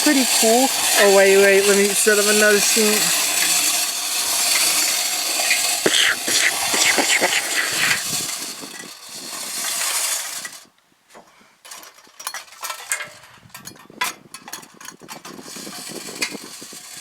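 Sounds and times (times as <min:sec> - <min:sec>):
hissing noise: 0:05.3 - 0:08.3.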